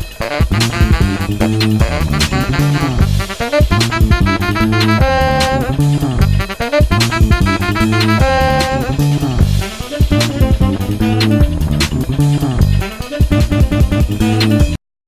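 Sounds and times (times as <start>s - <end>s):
jazzy instrumental music: 0.0s - 14.8s.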